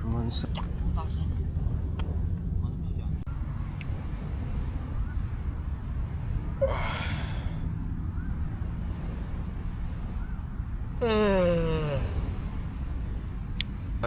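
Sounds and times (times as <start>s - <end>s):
person breathing sound: 6.6s - 7.6s, 11.0s - 12.3s
drawn-out falling vocal sound: 11.0s - 12.3s.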